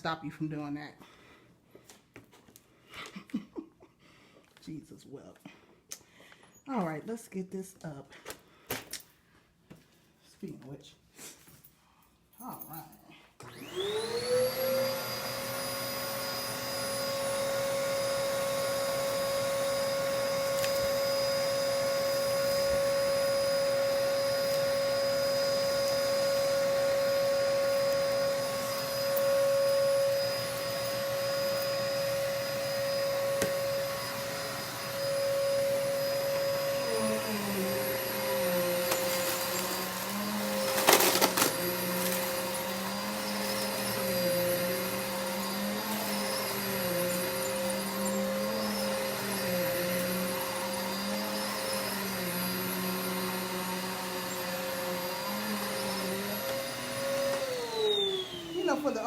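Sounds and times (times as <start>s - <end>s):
vacuum cleaner motor whine: 13.4s - 59.0s.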